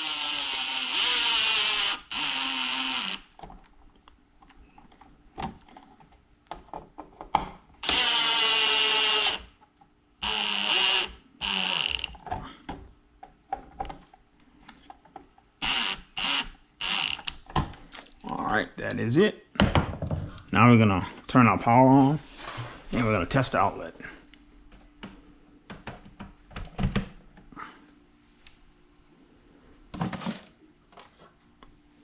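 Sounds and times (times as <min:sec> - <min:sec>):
power drill driving screws: 0:00.0 - 0:03.3, 0:07.8 - 0:09.5, 0:10.2 - 0:12.2, 0:15.6 - 0:17.3.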